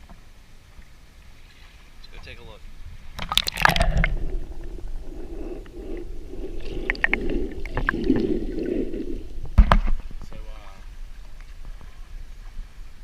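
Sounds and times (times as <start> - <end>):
underwater gurgling and rumbling: 2.8 - 12.9
splash of entry into water: 3.2 - 4.7.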